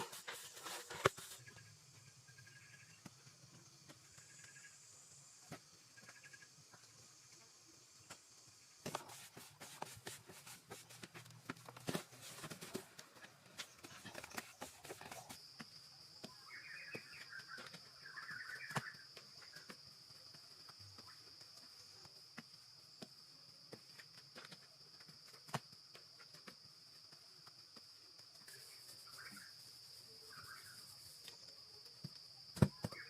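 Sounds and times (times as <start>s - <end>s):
bird chirps: 16.2s - 19.7s, 28.5s - 31.5s.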